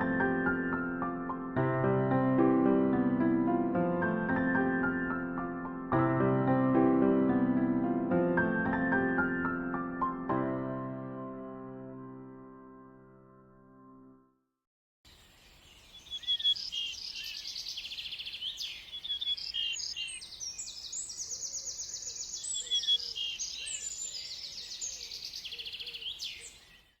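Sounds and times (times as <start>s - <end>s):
birds trilling and chirping: 15.1s - 27.0s.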